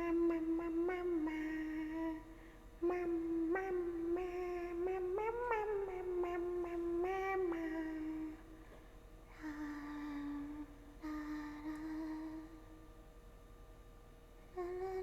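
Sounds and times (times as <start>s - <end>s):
woman humming: 0.0s - 8.6s, 9.3s - 12.9s, 14.5s - 15.0s.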